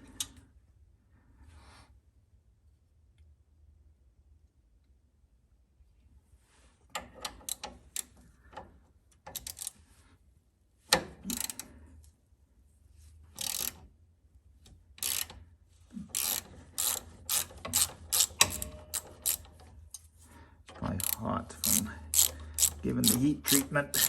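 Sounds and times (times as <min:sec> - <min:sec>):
ratchet wrench clicking: 0:09.3 - 0:09.8, 0:11.3 - 0:11.7, 0:13.4 - 0:13.8, 0:15.0 - 0:15.4, 0:16.1 - 0:20.0, 0:21.0 - 0:24.0.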